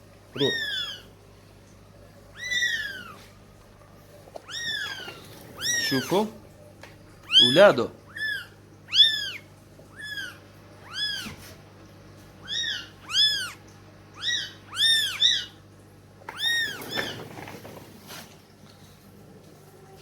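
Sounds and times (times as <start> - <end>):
kittens mewing: 0.3 - 1.1, 2.3 - 3.4, 4.4 - 6.4, 7.2 - 11.6, 12.4 - 15.6, 16.3 - 17.5.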